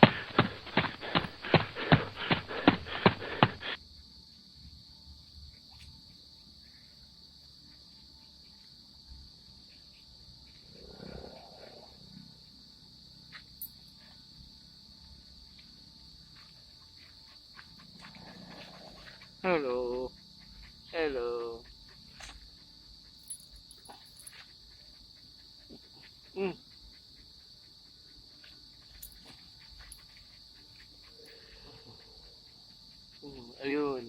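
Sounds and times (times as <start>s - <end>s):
quick running footsteps: 0.0s - 3.8s
high-pitched insect drone: 0.0s - 34.0s.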